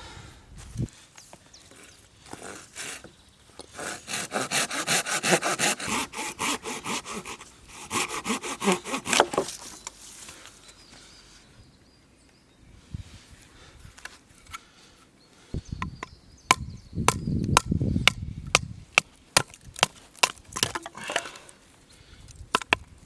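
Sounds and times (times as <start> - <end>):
hand saw cutting wood: 2.3 - 9.6.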